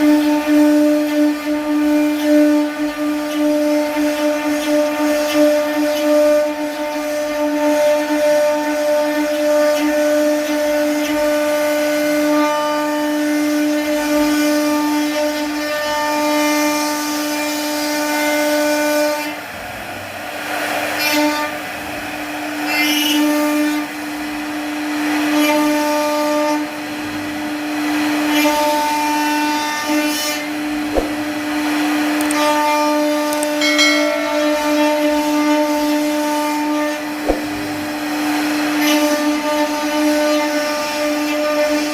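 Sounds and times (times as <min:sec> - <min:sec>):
sharp click: 0:32.2 - 0:32.4, 0:33.3 - 0:35.0.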